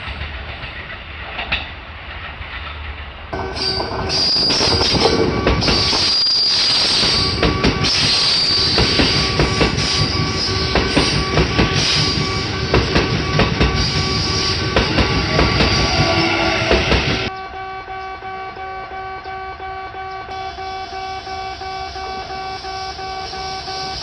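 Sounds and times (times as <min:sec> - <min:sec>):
train wheels clacking on rails: 0:00.0 - 0:17.4
crossing warning bell ringing: 0:03.4 - 0:24.0.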